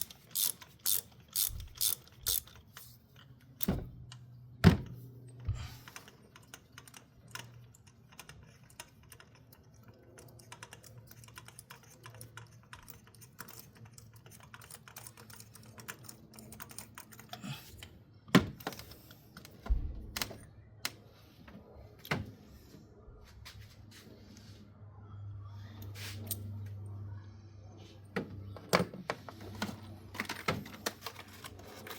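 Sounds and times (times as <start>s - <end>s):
ratchet clicking: 0.0s - 2.6s.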